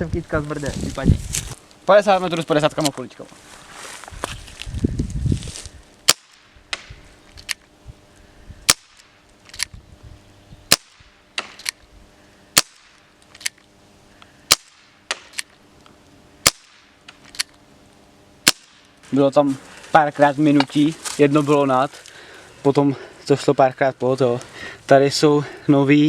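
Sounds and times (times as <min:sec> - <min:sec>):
airsoft revolver shots: 0:06.0 - 0:06.9, 0:08.7 - 0:09.7, 0:10.7 - 0:11.8, 0:12.6 - 0:13.6, 0:14.5 - 0:15.5, 0:16.4 - 0:17.5, 0:18.4 - 0:18.9.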